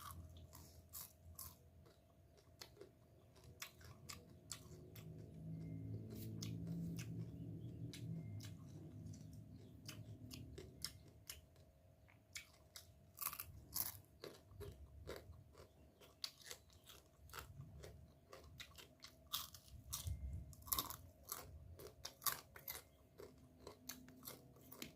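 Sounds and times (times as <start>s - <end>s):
low hum: 0.0s - 12.1s, 19.0s - 24.6s
chewing crunchy crab shell: 0.0s - 24.9s.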